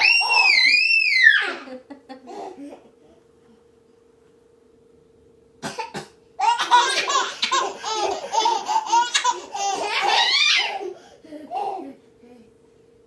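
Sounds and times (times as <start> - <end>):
person coughing: 5.6 - 6.2
baby laughing: 6.4 - 12.0.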